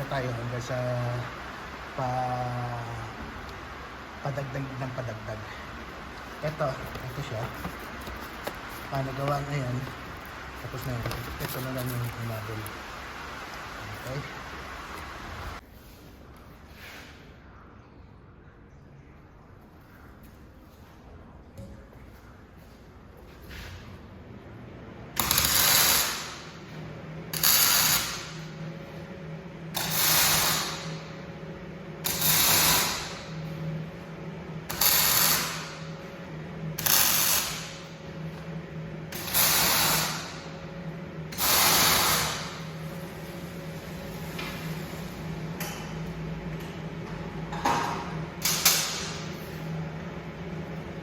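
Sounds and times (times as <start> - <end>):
machine hum: 0.0 - 15.6, 24.0 - 51.0
electric welding: 25.2 - 26.6, 27.3 - 28.6, 29.7 - 31.1, 32.0 - 33.4, 34.7 - 35.9, 36.8 - 37.9, 39.1 - 40.6, 41.3 - 43.6, 48.4 - 49.2.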